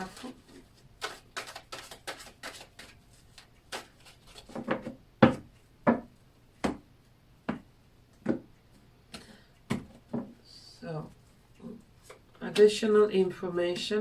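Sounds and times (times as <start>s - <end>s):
cards shuffling: 0.0s - 4.9s.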